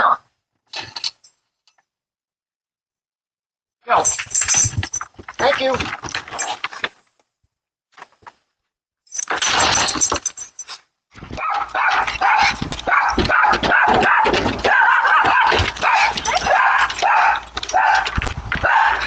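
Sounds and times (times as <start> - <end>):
dogs barking: 11.3 - 19.0.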